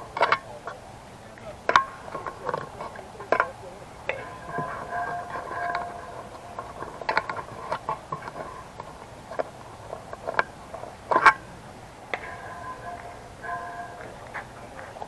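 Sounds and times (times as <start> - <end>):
faint steady tone: 0.0 - 15.0.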